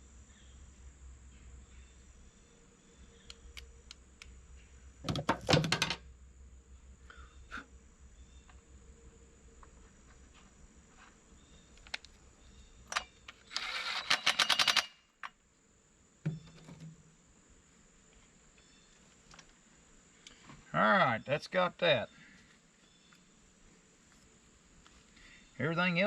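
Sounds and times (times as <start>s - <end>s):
rattling clicks with a hiss: 12.9s - 15.4s.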